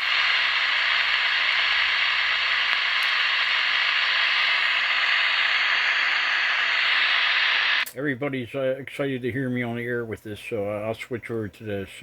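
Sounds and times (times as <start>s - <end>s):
radio static hiss: 0.0s - 7.9s.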